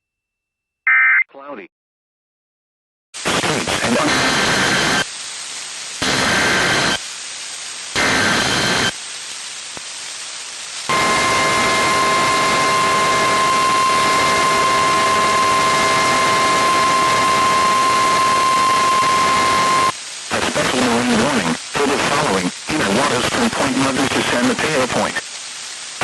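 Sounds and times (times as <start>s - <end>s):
radio hiss: 3.2s - 9.1s, 10.8s - 26.0s
steady warning alarm tone: 8.0s - 8.9s, 10.9s - 19.9s
screeching digital tones: 10.9s - 19.9s.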